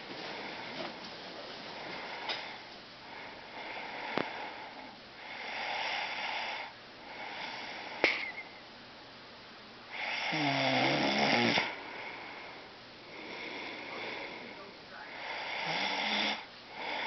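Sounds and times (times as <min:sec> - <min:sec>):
person snoring: 0:09.9 - 0:17.0.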